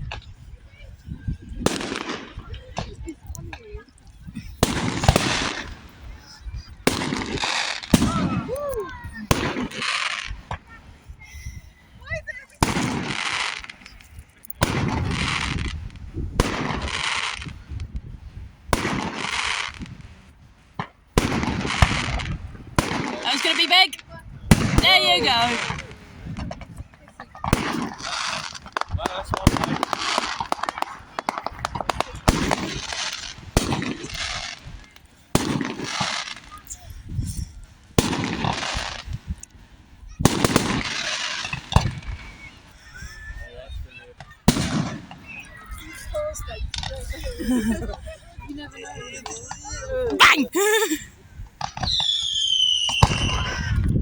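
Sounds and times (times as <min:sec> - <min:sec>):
fireworks crackling hiss: 0:00.1 - 0:47.2, 0:50.3 - 0:53.8
fireworks bangs: 0:01.5 - 0:11.3, 0:12.0 - 0:17.9, 0:18.7 - 0:39.4, 0:40.2 - 0:43.1, 0:44.2 - 0:46.0, 0:51.6 - 0:53.9
fireworks hiss: 0:20.8 - 0:43.3.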